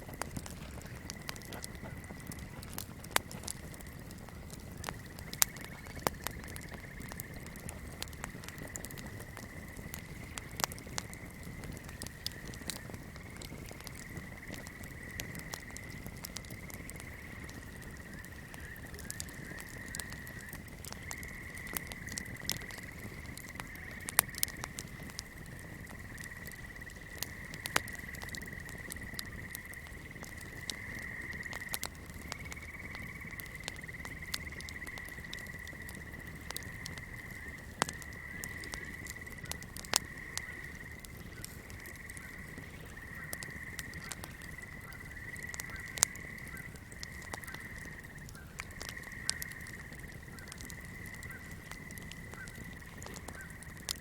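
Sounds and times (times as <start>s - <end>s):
fire crackling and popping: 0.0s - 54.0s
swamp creatures calling: 0.4s - 54.0s.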